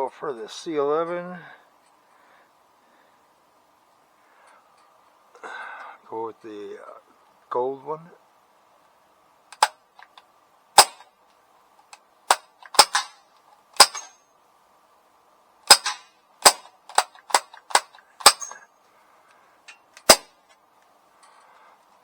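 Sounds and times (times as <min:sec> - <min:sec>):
bb pistol firing: 0:10.8 - 0:11.0, 0:12.3 - 0:13.2, 0:13.8 - 0:14.1, 0:15.7 - 0:18.6, 0:20.0 - 0:20.3.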